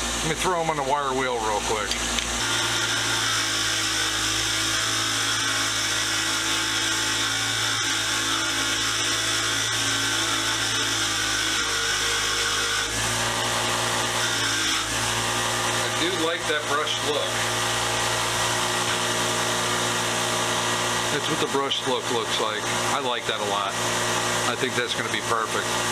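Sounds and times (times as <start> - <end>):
wire wheel brushing metal: 6.4 - 25.9.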